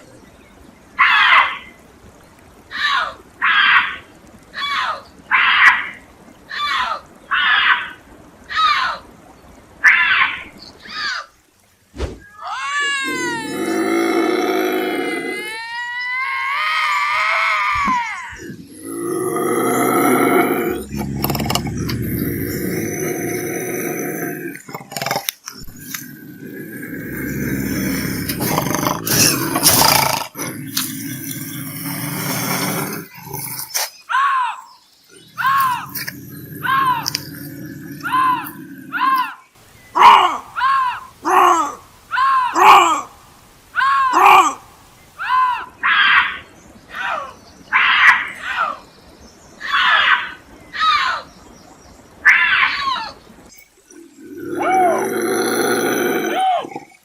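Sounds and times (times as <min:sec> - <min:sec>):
bobcat growling and screaming: 0:12.8 - 0:33.9, 0:35.1 - 0:39.4, 0:53.9 - 0:57.0.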